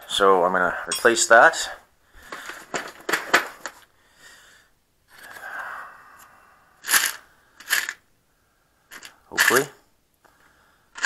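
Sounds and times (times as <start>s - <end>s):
small parts clicking and rattling: 2.3s - 3.8s, 6.8s - 8.0s, 8.9s - 9.8s.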